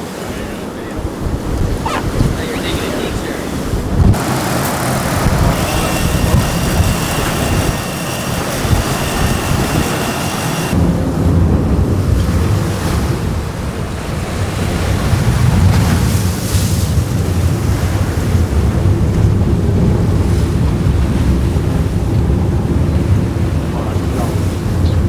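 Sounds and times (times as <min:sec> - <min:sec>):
water rushing past boat: 0:00.0 - 0:25.0
wind on microphone: 0:00.0 - 0:25.0
deep rumble: 0:17.2 - 0:25.0.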